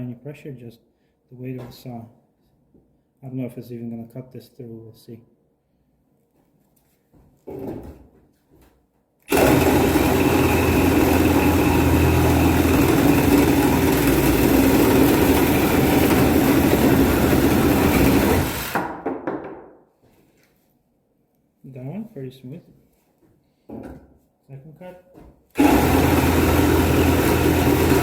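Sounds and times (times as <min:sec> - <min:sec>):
reciprocating saw cutting metal pipe: 0:09.3 - 0:18.8, 0:25.6 - 0:28.0.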